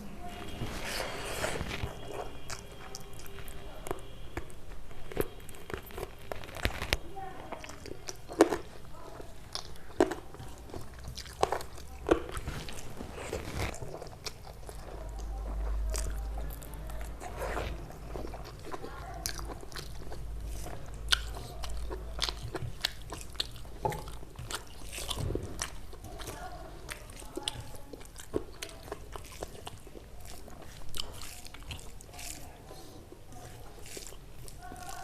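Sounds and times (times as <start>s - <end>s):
person crunching and chewing: 0.3s - 35.0s.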